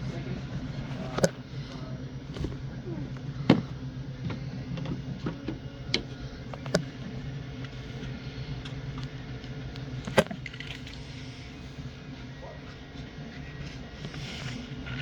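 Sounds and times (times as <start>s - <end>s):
steady low hum: 0.0s - 15.0s
sharp clicks and knocks: 3.5s - 7.1s.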